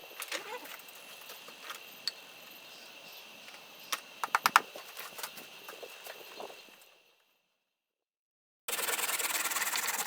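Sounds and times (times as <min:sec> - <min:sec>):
firewood clicking and knocking: 0:03.5 - 0:05.4.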